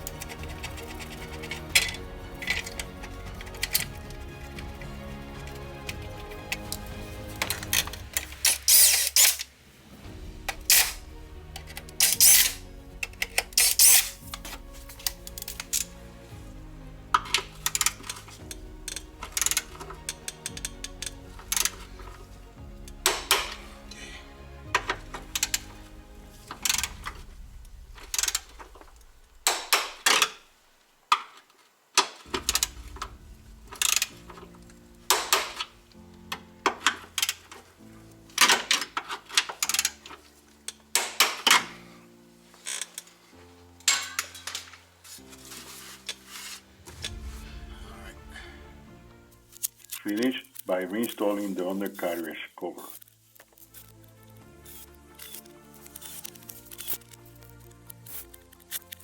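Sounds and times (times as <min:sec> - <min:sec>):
background music: 0:00.0 - 0:31.1, 0:31.8 - 0:59.0
ratchet wrench ratcheting: 0:07.5 - 0:09.5, 0:11.6 - 0:14.3, 0:18.9 - 0:21.9, 0:33.7 - 0:34.2, 0:54.6 - 0:59.0.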